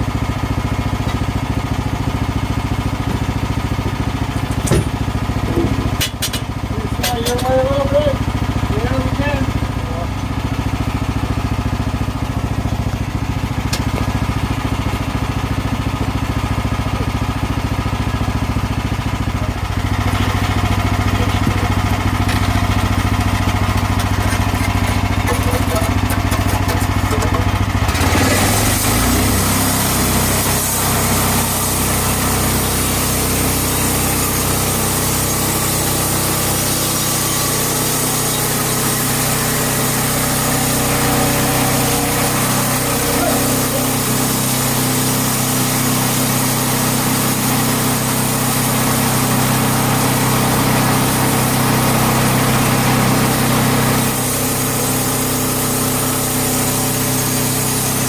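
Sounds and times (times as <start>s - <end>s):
gas engine running: 0.0s - 58.0s
bright hiss: 28.7s - 58.0s.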